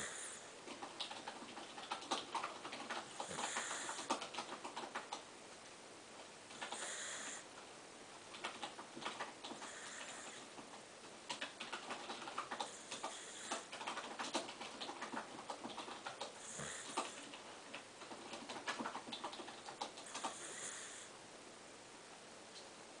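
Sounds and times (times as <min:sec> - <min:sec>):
dog snoring: 0:00.0 - 0:00.5, 0:03.1 - 0:04.1, 0:06.6 - 0:07.5, 0:09.6 - 0:10.5, 0:12.6 - 0:13.7, 0:16.3 - 0:17.3, 0:20.0 - 0:21.1
keyboard typing: 0:00.6 - 0:05.3, 0:06.5 - 0:06.9, 0:08.3 - 0:20.4.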